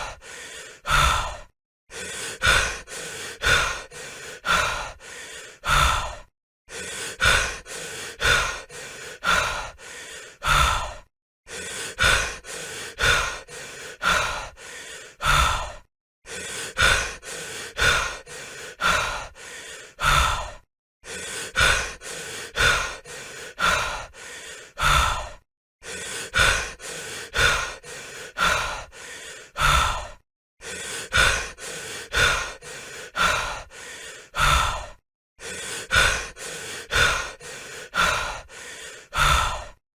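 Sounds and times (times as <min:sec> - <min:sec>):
person breathing heavily: 0:00.0 - 0:39.8.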